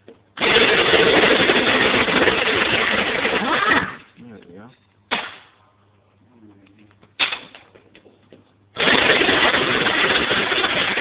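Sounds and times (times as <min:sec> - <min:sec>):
sharp knock: 0:05.1 - 0:05.5
lawnmower engine rattling: 0:08.8 - 0:11.0.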